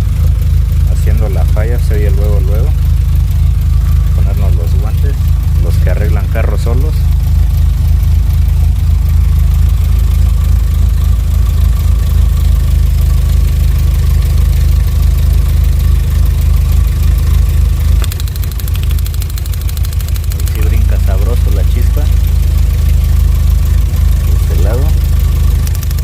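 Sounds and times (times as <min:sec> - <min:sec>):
car engine idling unevenly: 0:00.0 - 0:26.0
ignition spark ticking: 0:17.9 - 0:20.9, 0:25.5 - 0:26.0.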